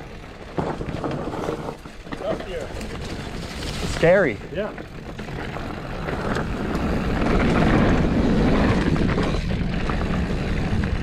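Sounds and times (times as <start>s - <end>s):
bike clicks and rattles: 0.0s - 11.0s
bike tyres rolling on dirt: 0.0s - 11.0s
wind on microphone: 2.8s - 11.0s.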